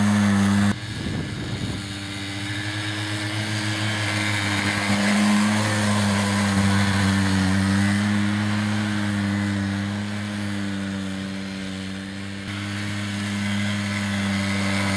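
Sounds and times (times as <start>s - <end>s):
quad bike engine running: 0.0s - 14.9s.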